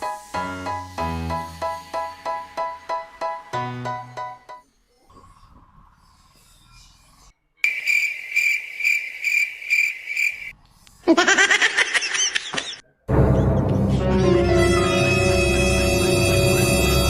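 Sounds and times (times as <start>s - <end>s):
cricket chirping: 7.6s - 10.6s.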